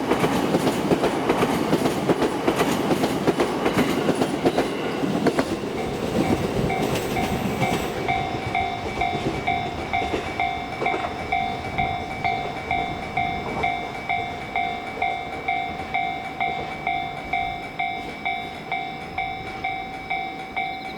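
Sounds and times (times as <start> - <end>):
passing train rumbling: 0.0 - 20.9
level crossing bell ringing: 6.2 - 20.9.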